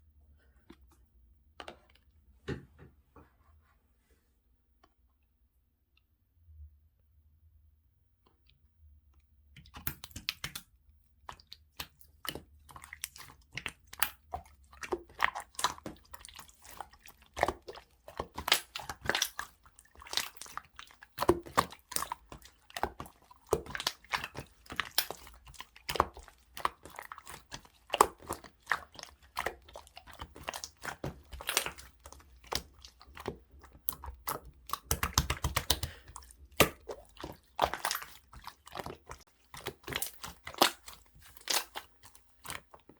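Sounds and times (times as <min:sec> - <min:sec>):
slime squeezed by hand: 0:15.1 - 0:42.7.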